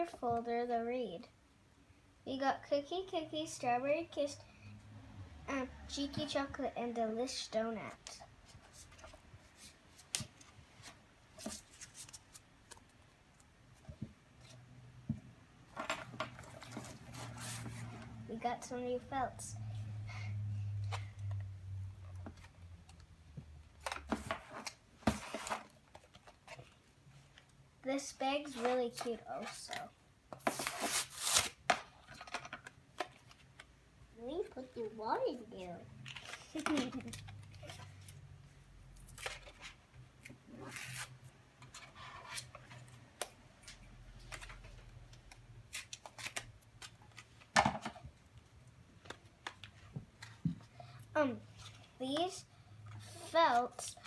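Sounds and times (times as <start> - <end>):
toy packaging rustling: 28.0 - 33.6, 36.0 - 38.2.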